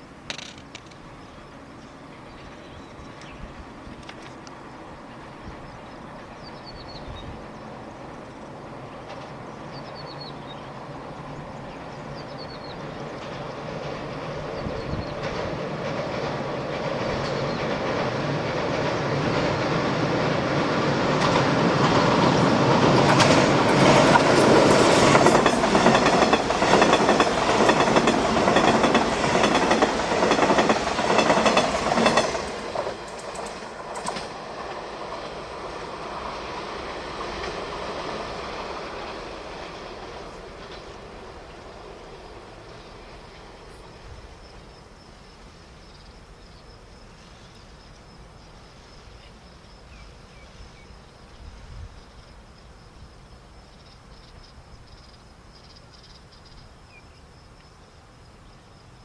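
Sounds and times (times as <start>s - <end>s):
train passing: 0.0s - 59.0s
wheels clacking over rail joints: 0.2s - 1.2s, 12.6s - 42.0s.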